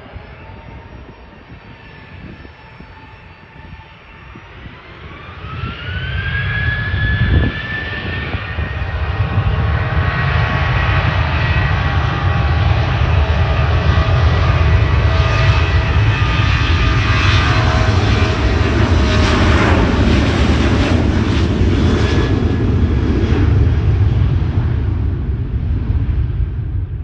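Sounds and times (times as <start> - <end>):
rising engine whine: 0.0 - 27.0.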